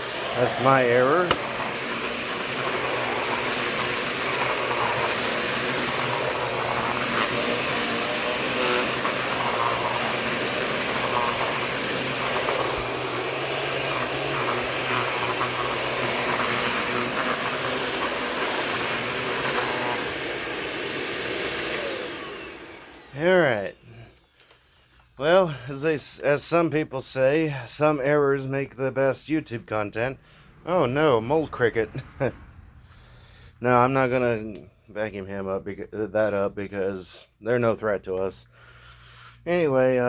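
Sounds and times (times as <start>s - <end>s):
upright vacuum cleaner running: 0.0s - 24.5s.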